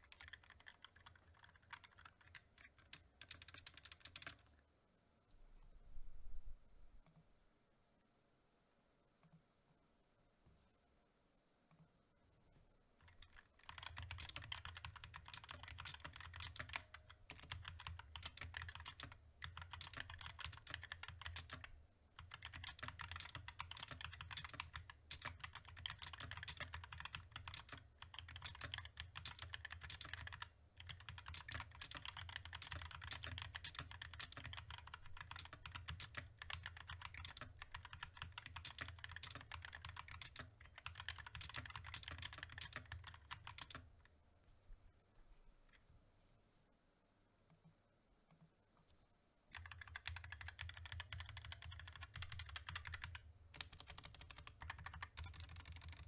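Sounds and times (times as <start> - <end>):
typing on mechanical keyboard: 0.0 - 4.5, 13.0 - 43.9, 49.5 - 56.0.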